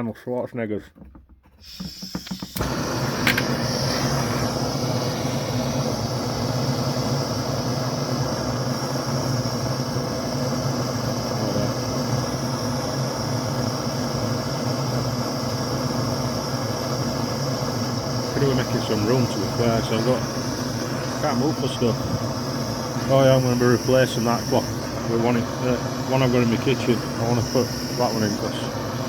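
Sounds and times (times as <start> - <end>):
mechanical running noise with hum: 1.6 - 29.0.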